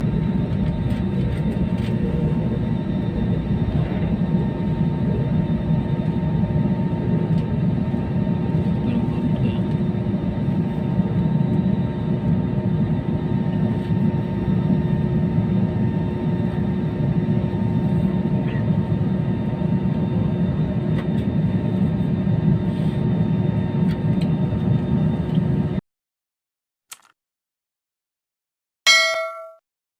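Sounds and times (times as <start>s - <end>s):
jet engines rumbling and whining: 0.0s - 25.8s.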